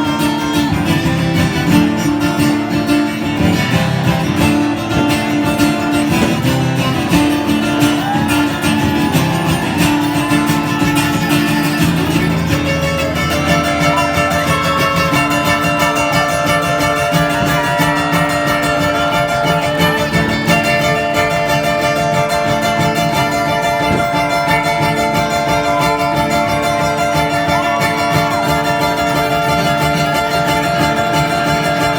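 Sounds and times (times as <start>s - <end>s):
steady drum beat: 0.0s - 21.2s
bass guitar: 0.0s - 31.9s
lead guitar with bending notes: 0.0s - 31.9s.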